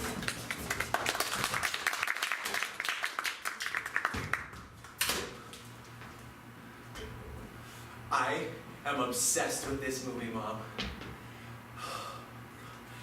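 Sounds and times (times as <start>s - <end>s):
audience applauding: 0.0s - 4.5s.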